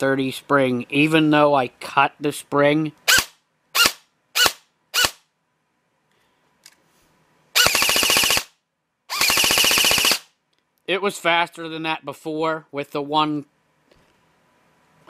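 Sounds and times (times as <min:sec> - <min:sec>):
airsoft gun full-auto burst: 0:03.1 - 0:05.2, 0:07.6 - 0:10.3.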